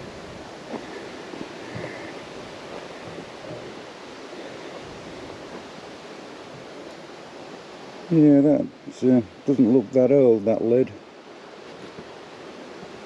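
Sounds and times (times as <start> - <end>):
wind rushing over microphone: 0.0 - 9.5.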